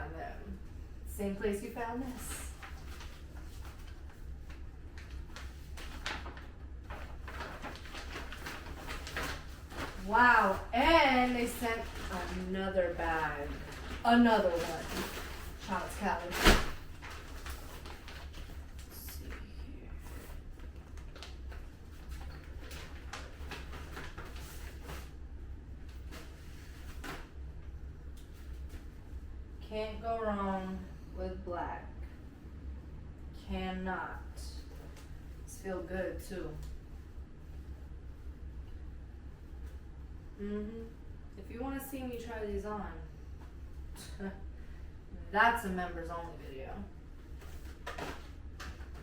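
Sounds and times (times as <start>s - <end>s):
low steady hum: 0.0s - 49.0s
packaging and clothing rustling: 2.0s - 19.4s, 20.0s - 25.2s, 47.2s - 49.0s.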